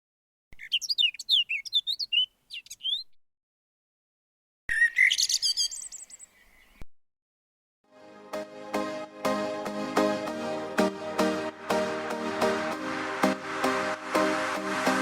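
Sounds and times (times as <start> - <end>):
small birds chirping: 0.5 - 3.2, 4.7 - 6.8.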